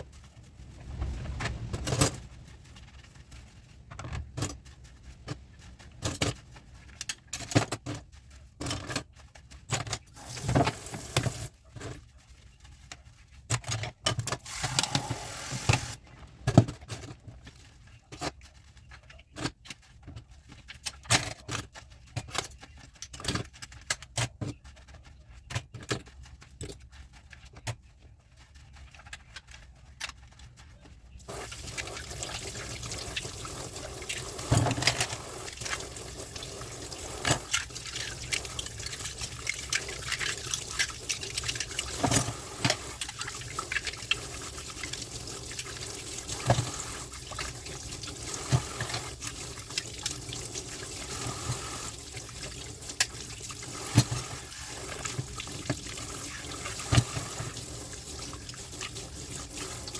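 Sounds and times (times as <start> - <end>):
tap running water: 10.2 - 11.5, 14.3 - 16.0, 31.2 - 59.9.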